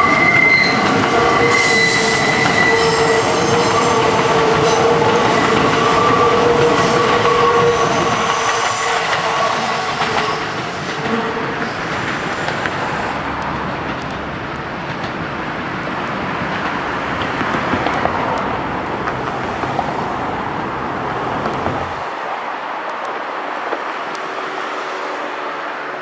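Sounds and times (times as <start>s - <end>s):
road traffic rushing: 0.0s - 26.0s.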